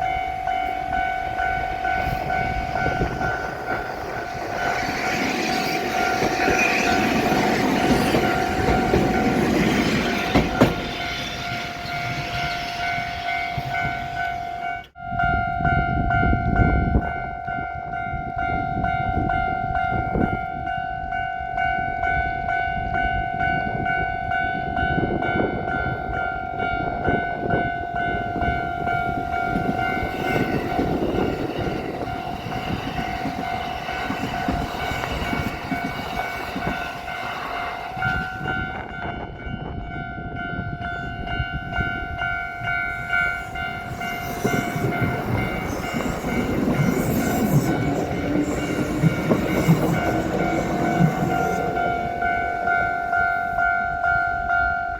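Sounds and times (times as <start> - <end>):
train running over rails: 0.0 - 54.9
level crossing bells ringing: 17.2 - 54.9.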